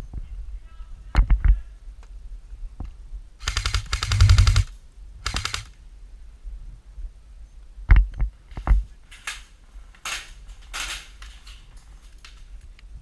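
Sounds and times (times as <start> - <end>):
airsoft gun firing rapid shots: 3.4 - 5.7.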